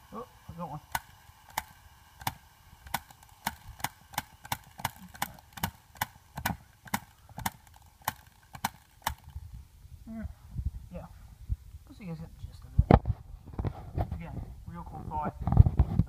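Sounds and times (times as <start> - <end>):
wind-up toy plastic clicks: 0.5 - 9.4.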